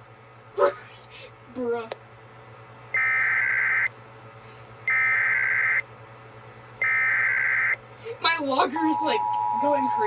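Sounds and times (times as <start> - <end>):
warbling data tone bursts: 3.0 - 3.9, 4.9 - 5.8, 6.8 - 7.8.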